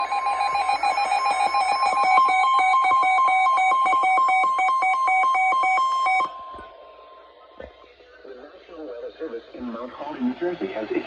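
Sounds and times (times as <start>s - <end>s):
steady alarm tone: 0.0s - 7.6s.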